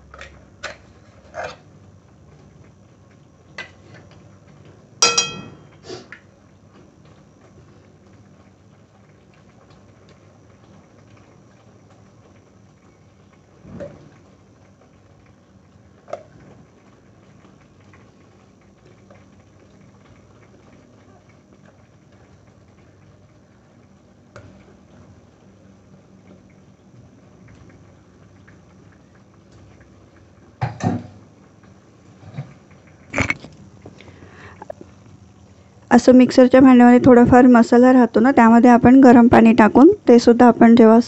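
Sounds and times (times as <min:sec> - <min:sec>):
paste frying in oil: 0:00.0 - 0:41.0
spoon knocking against metal pan: 0:05.0 - 0:05.7.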